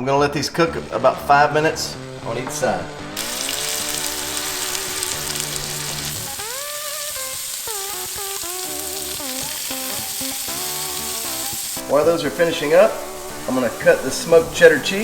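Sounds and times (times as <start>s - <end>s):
patties sizzling in a pan: 2.5s - 15.0s.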